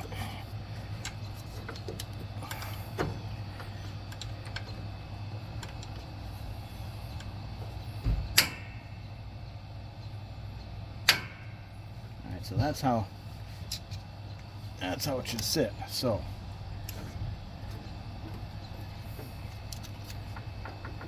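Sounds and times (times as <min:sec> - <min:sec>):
steady low hum: 0:00.0 - 0:21.0
metal parts clicking and tapping: 0:00.9 - 0:04.9, 0:05.5 - 0:06.1, 0:17.6 - 0:21.0.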